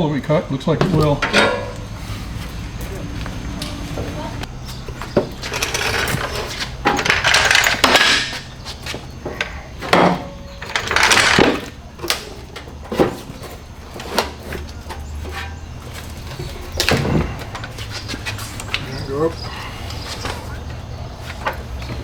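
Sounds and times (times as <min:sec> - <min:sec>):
steady low hum: 0:00.0 - 0:12.8
metal step scraping and knocking: 0:00.6 - 0:11.7.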